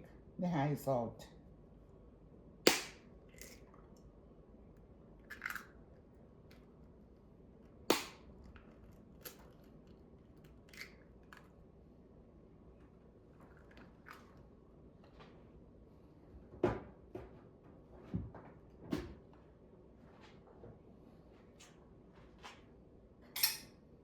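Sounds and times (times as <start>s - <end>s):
eggs cracking on a bowl: 2.7s - 4.0s, 5.2s - 5.8s, 7.9s - 11.5s.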